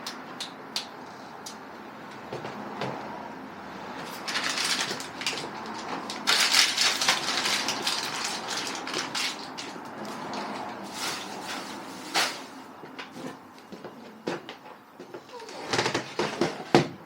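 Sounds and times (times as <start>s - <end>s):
sheets crinkling and rustling: 4.0s - 12.6s.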